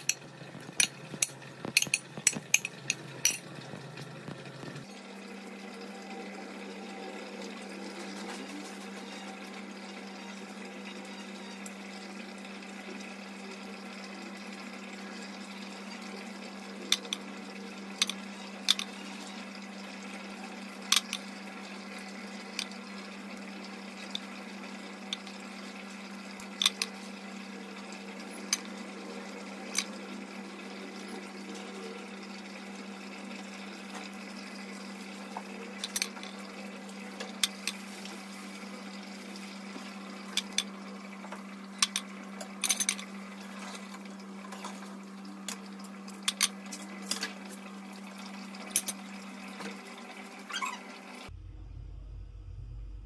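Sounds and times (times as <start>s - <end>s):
utensils clinking against dishes: 0.0s - 3.5s, 41.8s - 44.8s
low hum: 51.3s - 53.0s.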